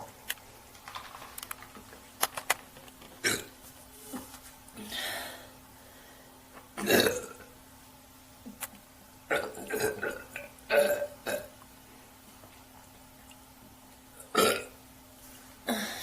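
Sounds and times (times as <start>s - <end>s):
woman burping: 3.2s - 3.5s, 6.8s - 7.4s, 9.3s - 11.5s, 14.3s - 14.7s.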